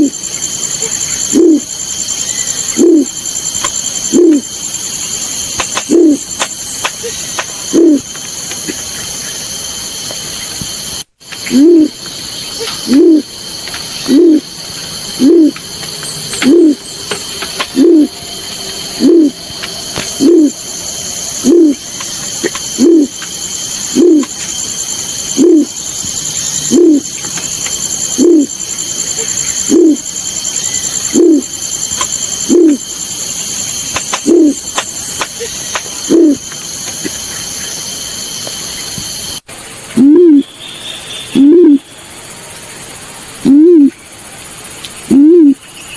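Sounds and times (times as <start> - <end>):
hooting bird lure call: 0.0 - 8.1, 11.4 - 12.0, 12.6 - 13.3, 14.0 - 14.5, 15.2 - 15.7, 16.3 - 18.2, 18.9 - 36.5, 40.0 - 41.9, 43.4 - 44.0, 45.0 - 45.7.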